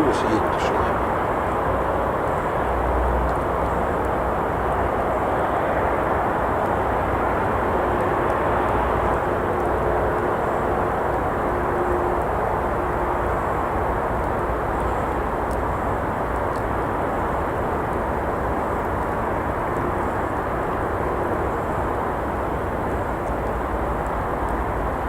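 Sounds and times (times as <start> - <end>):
road traffic rushing: 0.0 - 1.2.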